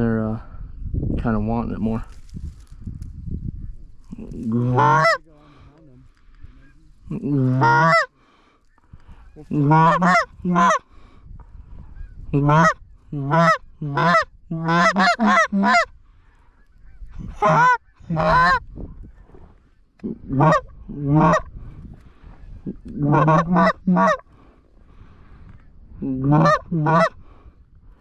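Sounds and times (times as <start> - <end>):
goose honks: 4.5 - 5.2, 7.1 - 8.1, 9.4 - 10.8, 12.4 - 15.9, 17.2 - 18.6, 20.0 - 21.5, 22.6 - 24.2, 26.2 - 27.2.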